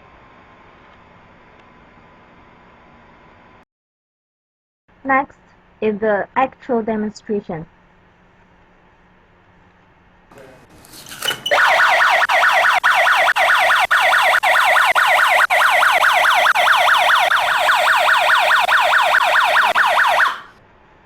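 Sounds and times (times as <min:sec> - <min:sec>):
electronic alarm siren warbling: 0:11.5 - 0:20.5.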